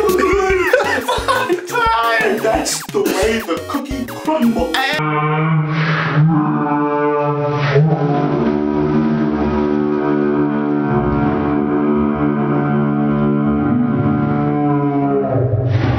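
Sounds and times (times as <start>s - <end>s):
music with held chords: 0.0s - 5.0s.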